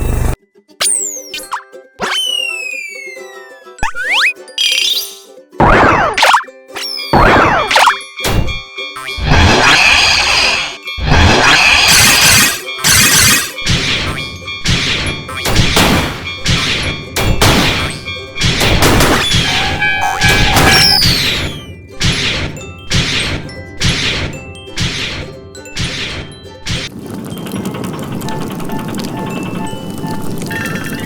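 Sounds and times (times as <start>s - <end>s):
cartoon music: 0.0s - 26.9s
falling whistle-like glides: 2.0s - 4.3s
loud noisy sound effects: 7.2s - 23.4s
bell dinging: 16.1s - 19.9s.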